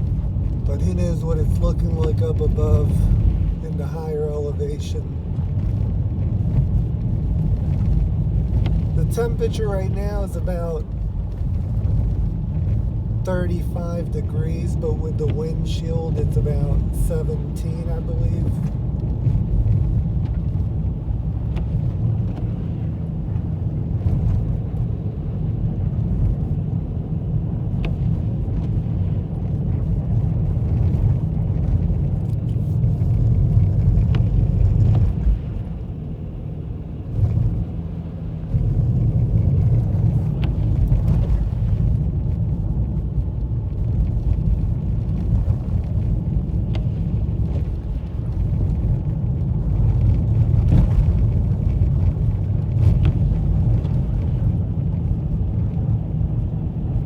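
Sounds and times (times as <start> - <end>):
car engine and tyre rumble: 0.0 - 57.0.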